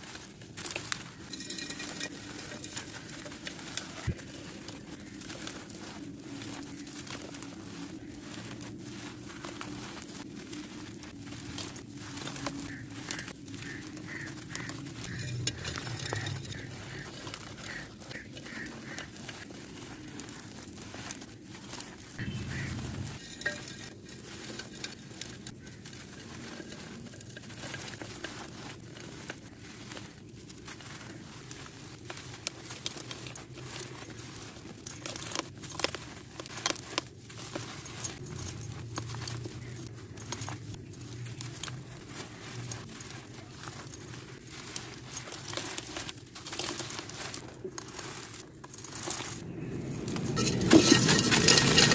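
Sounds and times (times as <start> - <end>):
patter of falling grit: 0.0 - 51.9
sand-cement chunks crushed and crumbled: 0.0 - 51.9.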